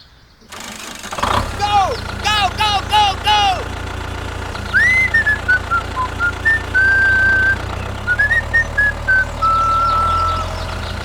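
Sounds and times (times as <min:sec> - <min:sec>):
engine humming: 0:00.4 - 0:11.0
person whistling a tune: 0:04.8 - 0:10.5.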